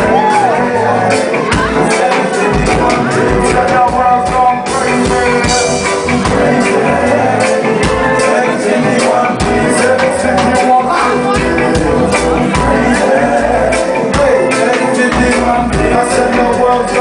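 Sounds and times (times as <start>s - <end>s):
live band playing: 0.0s - 17.0s
person singing: 0.0s - 17.0s.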